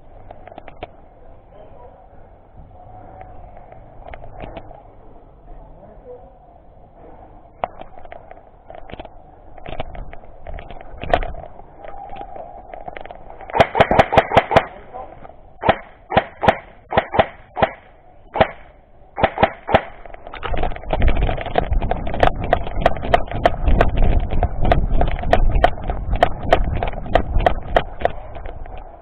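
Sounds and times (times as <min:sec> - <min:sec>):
low rumble: 0:00.0 - 0:29.0
airsoft guns firing: 0:13.4 - 0:15.0, 0:15.6 - 0:28.2.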